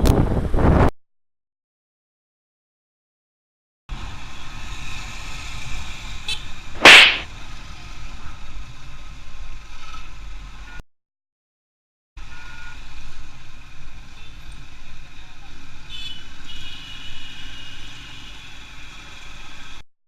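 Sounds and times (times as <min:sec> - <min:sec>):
road rumble: 0:03.9 - 0:10.8, 0:12.2 - 0:19.9
loud sharp burst: 0:06.8 - 0:07.3.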